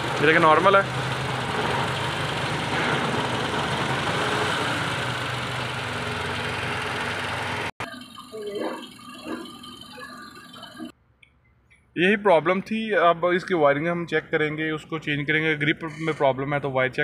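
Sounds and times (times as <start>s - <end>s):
car engine idling: 0.0s - 10.9s.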